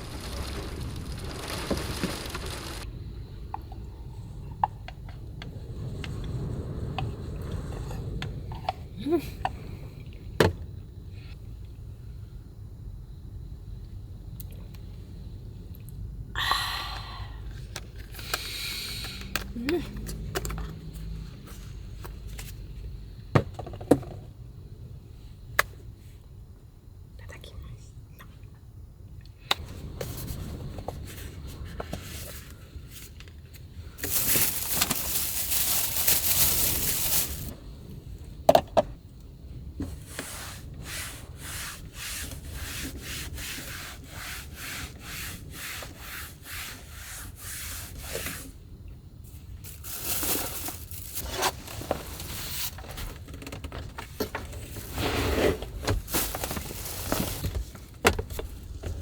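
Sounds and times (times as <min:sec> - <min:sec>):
rustling noise: 0:29.6 - 0:37.6, 0:49.2 - 0:59.0.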